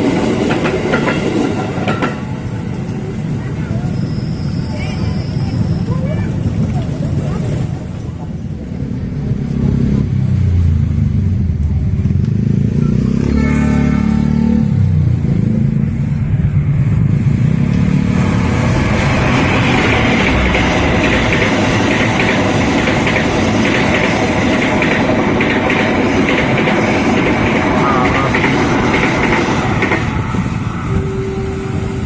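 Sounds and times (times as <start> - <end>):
rushing rail clatter: 0.0 - 32.0
train rumbling past: 0.0 - 32.0
brief higher tone: 13.2 - 14.8.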